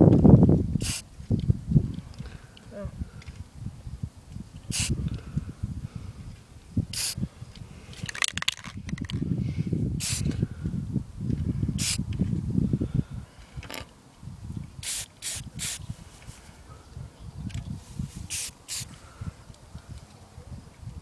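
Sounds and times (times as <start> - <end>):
spray paint can hissing: 0.8 - 1.1, 4.7 - 5.0, 6.9 - 7.2, 8.1 - 9.2, 10.0 - 10.3, 11.8 - 12.0, 14.8 - 15.8, 18.2 - 18.9.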